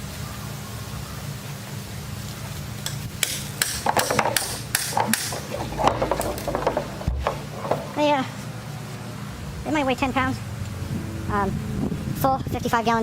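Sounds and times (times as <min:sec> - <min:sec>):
empty metal drums knocking and scraping: 0:03.7 - 0:08.2
steady low hum: 0:04.2 - 0:13.0.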